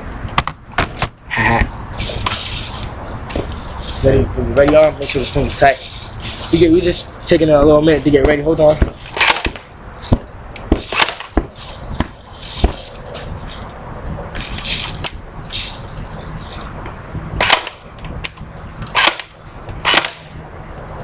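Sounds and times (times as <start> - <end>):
loud cracks: 8.7 - 13.7, 17.4 - 17.9, 18.9 - 20.3.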